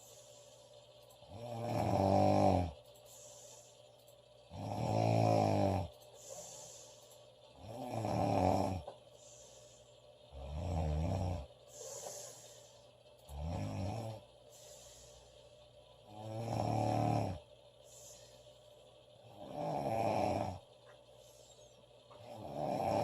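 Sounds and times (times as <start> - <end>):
woman snoring loudly: 1.3 - 2.8, 4.5 - 5.9, 7.6 - 8.8, 10.3 - 12.1, 13.3 - 14.2, 16.0 - 17.4, 19.2 - 20.6, 22.2 - 23.0.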